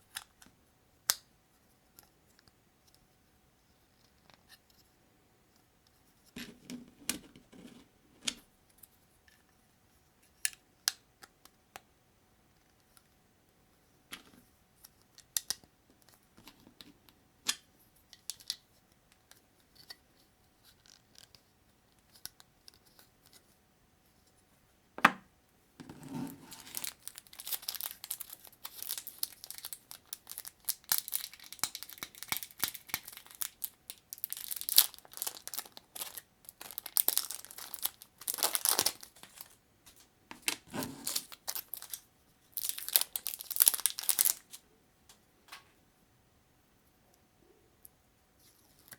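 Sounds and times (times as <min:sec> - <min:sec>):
plastic crinkling and tearing: 0:26.2 - 0:39.6, 0:40.4 - 0:44.6.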